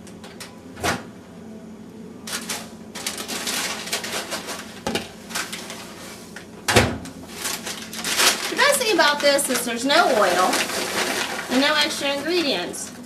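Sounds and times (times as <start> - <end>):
popcorn popping in paper bag: 6.9 - 13.0.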